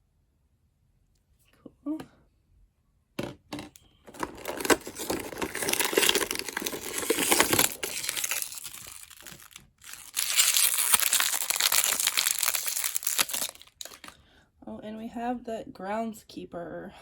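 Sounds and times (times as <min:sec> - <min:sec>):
plastic packaging crinkling: 0:04.1 - 0:14.2.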